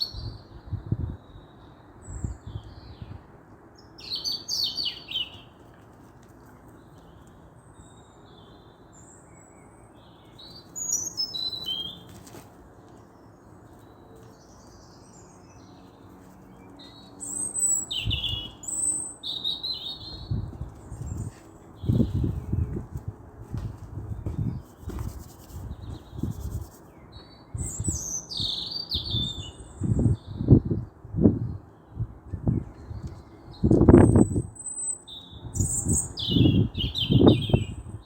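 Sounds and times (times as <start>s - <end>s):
small birds chirping: 6.3s - 22.8s, 24.2s - 31.0s, 32.8s - 37.8s.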